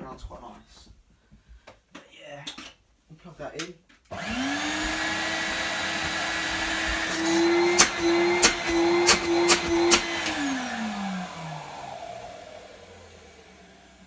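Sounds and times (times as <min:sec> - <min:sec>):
vacuum cleaner motor whining: 0:04.1 - 0:14.0.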